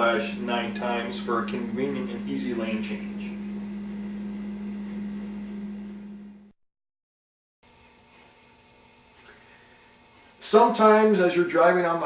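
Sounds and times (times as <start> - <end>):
steady low hum: 0.0 - 6.5.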